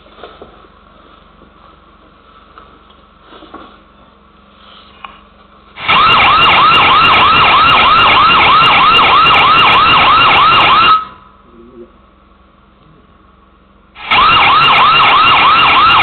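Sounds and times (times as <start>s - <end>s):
fast wailing siren: 5.8s - 11.2s, 14.0s - 16.0s.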